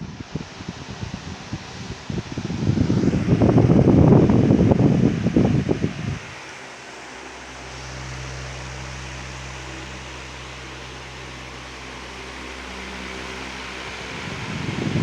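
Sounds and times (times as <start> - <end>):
air hissing from fan: 0.0 - 15.0
fan motor hum: 0.0 - 15.0.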